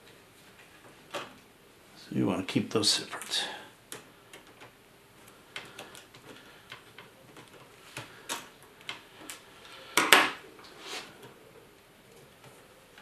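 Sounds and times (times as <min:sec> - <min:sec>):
scraping rustle: 0:10.6 - 0:11.4.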